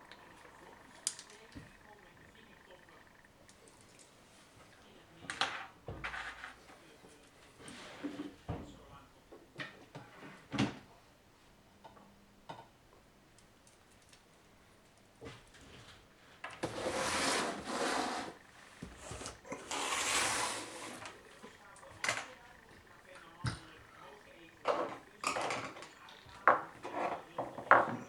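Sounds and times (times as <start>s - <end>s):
rough rubbing: 16.6s - 23.2s.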